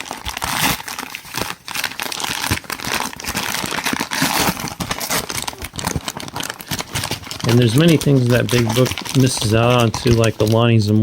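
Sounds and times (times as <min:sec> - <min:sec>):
packaging crinkling: 0:00.0 - 0:10.8.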